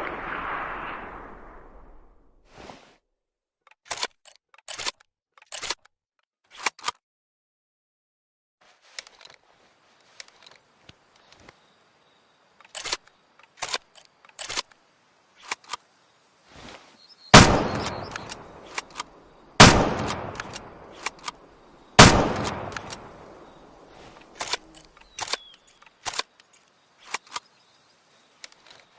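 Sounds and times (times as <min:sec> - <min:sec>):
rifle shots with echo: 0:17.4 - 0:18.8, 0:19.6 - 0:21.1, 0:22.0 - 0:23.5
rifle bolt clicks: 0:17.7 - 0:21.4, 0:22.0 - 0:23.3.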